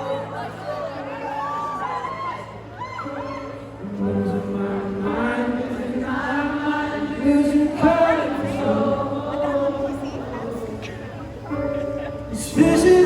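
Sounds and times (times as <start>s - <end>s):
wordless singing voices: 3.6s - 11.4s, 12.3s - 13.0s.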